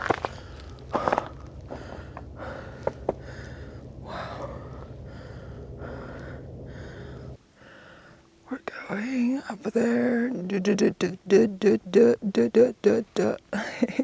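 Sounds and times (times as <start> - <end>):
person breathing hard: 0.0 - 8.3.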